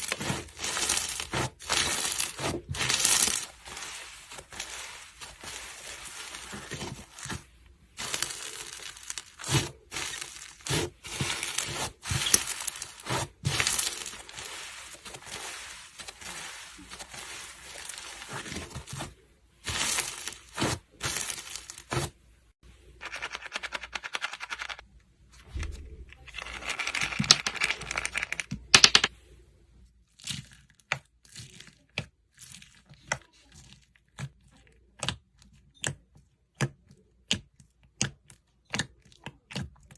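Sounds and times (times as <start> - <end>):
slime crackling and popping: 8.0 - 15.2.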